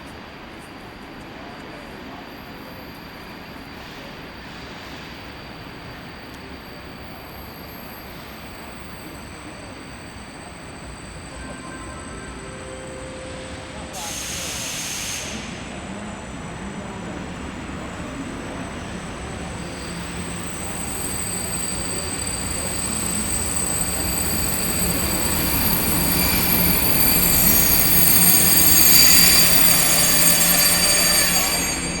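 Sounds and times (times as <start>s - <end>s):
train rolling noise: 0.0s - 32.0s
wheels and brakes squealing: 1.8s - 32.0s.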